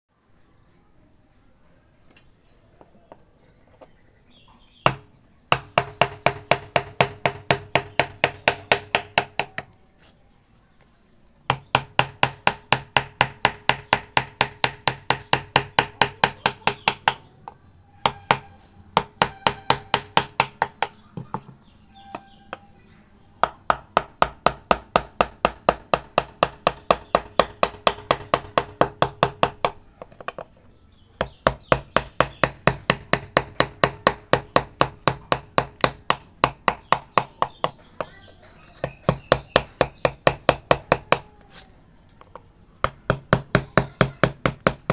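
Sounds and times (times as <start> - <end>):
mallet tapping chisel into wood: 4.9 - 9.7, 11.5 - 22.7, 23.4 - 30.5, 31.2 - 38.2, 38.8 - 41.4, 42.2 - 44.9.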